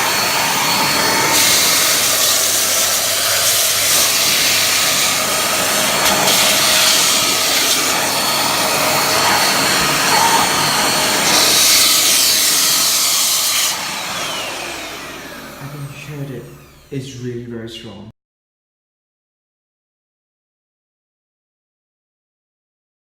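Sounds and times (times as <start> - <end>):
handheld vacuum cleaner running: 0.0 - 17.2.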